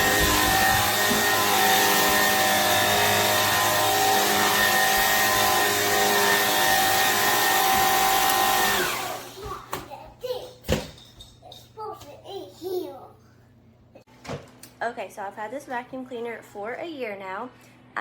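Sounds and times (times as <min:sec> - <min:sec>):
vacuum cleaner running: 0:00.0 - 0:09.6.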